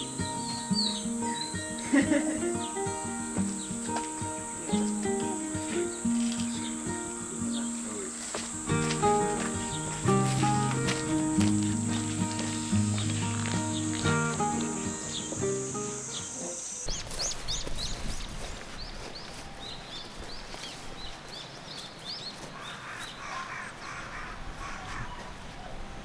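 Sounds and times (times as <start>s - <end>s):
birds chattering calls: 0.0s - 25.4s
background music: 8.6s - 16.8s.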